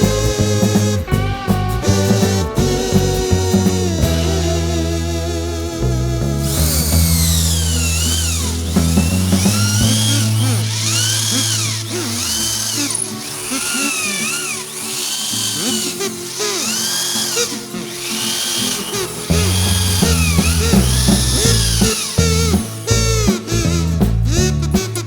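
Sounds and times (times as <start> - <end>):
background music: 0.0 - 25.0
electric drill motor whining: 6.4 - 24.0.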